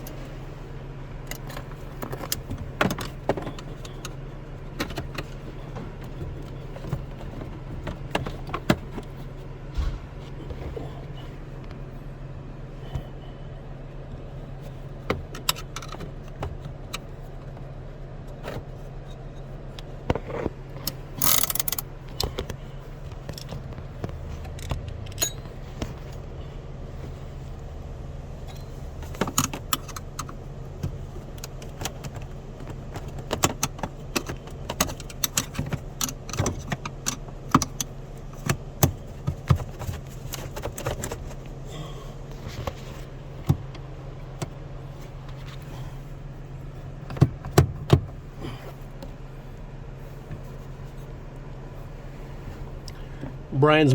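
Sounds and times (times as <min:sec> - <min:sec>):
low hum: 0:09.0 - 0:15.0
metal clicks and rattles: 0:20.2 - 0:22.6.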